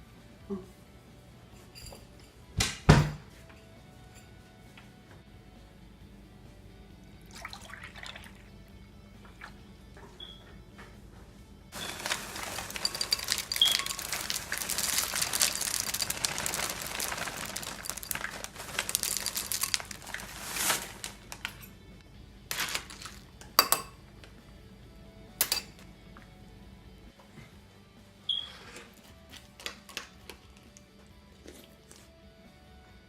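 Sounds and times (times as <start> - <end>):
music: 0.0 - 33.0
rustling and crinkling: 11.8 - 21.7.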